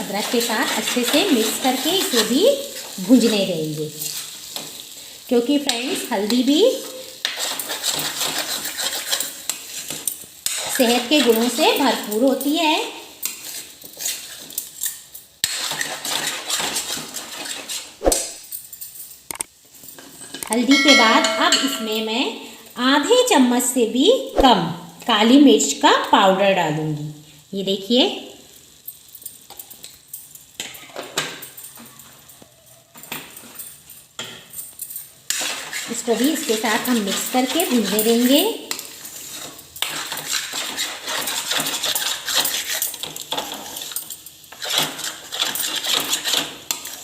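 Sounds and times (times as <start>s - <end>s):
spoon scraping paste in a pan: 0.1s - 3.4s, 7.1s - 11.8s, 13.2s - 18.0s, 35.3s - 47.0s
spoon clinking against pan: 20.6s - 22.2s.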